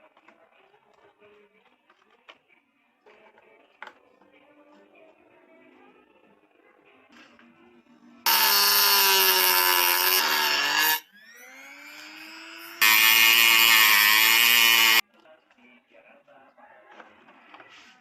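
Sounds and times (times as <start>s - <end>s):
power tool motor running: 8.3s - 15.0s.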